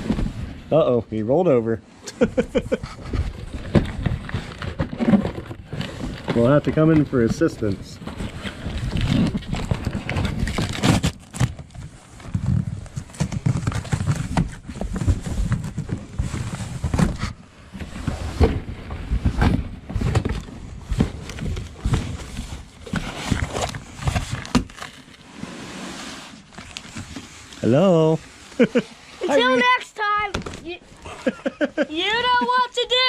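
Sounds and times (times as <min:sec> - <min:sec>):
rustling in box: 0:02.7 - 0:31.2
knocks and thumps in cardboard box: 0:03.0 - 0:25.0.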